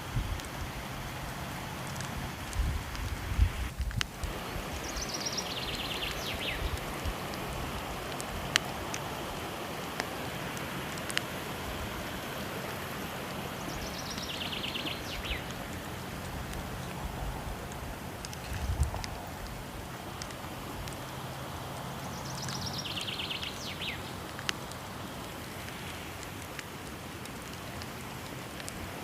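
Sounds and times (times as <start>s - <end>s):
falling water rushing: 0.0s - 29.0s
wood fire crackling: 0.0s - 29.0s.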